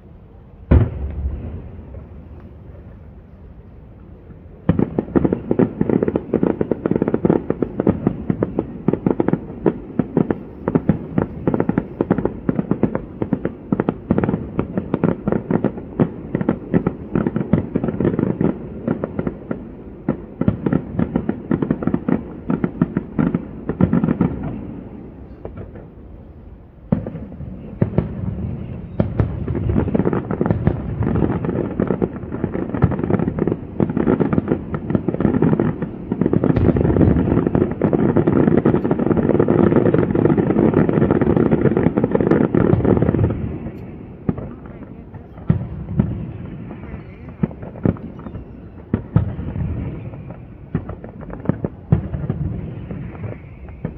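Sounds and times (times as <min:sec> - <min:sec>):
fireworks crackling and banging: 0:00.6 - 0:53.9.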